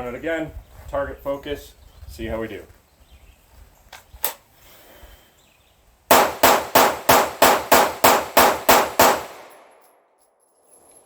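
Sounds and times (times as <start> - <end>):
pistol shots: 6.1 - 9.8.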